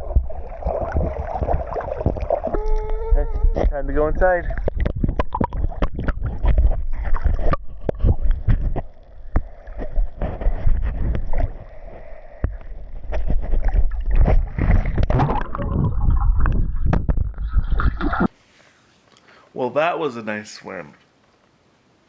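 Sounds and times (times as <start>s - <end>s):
pool water splashing: 0.0s - 3.2s
wind rumbling on microphone: 0.0s - 18.3s.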